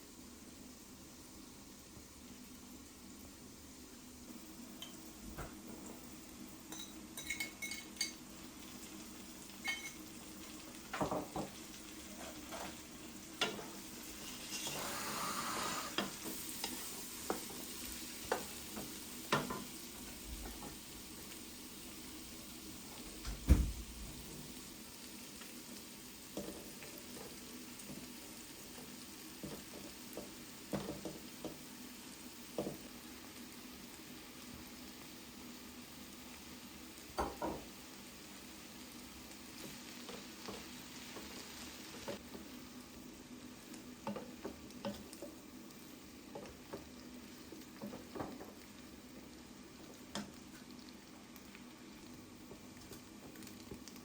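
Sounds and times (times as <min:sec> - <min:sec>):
food frying in a pan: 0:00.0 - 0:54.0
utensil clinking against pan: 0:06.7 - 0:08.2.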